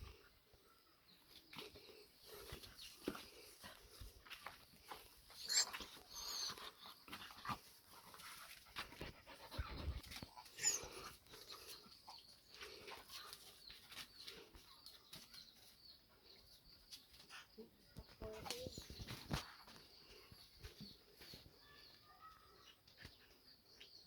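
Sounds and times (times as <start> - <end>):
puppy whimpering: 5.4 - 6.6, 10.6 - 11.0.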